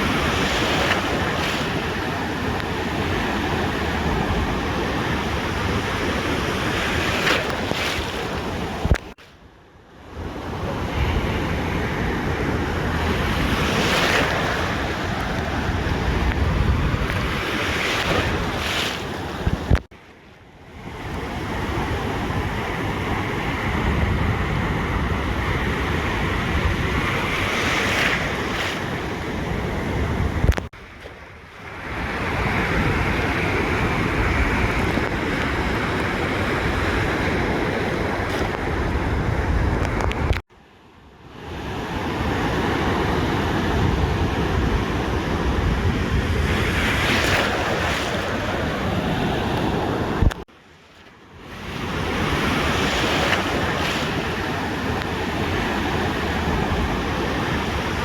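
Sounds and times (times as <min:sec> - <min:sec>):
ocean waves on beach: 0:00.0 - 0:58.0
wind buffeting microphone: 0:10.2 - 0:19.9, 0:31.7 - 0:40.4, 0:42.6 - 0:50.4.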